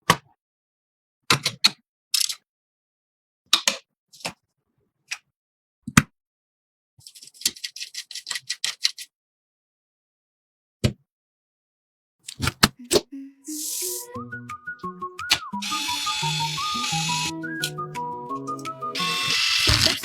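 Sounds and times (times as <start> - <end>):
computer parts clicking and tapping: 19.0 - 20.0.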